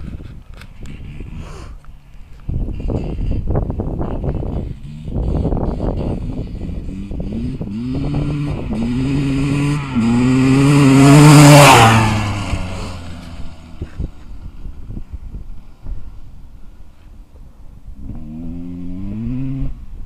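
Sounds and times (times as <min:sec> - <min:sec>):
motocross bike accelerating past: 0:04.3 - 0:14.4, 0:18.0 - 0:19.8.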